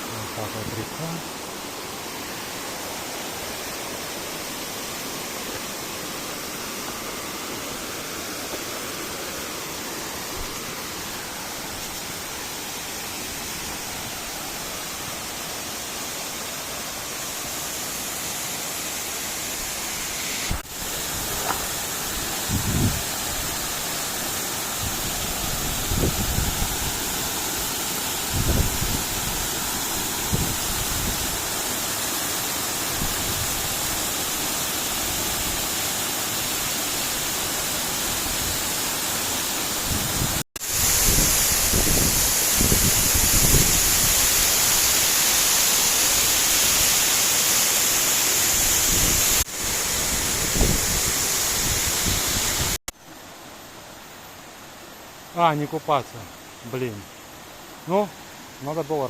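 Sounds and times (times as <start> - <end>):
river rushing: 0.0 - 40.0.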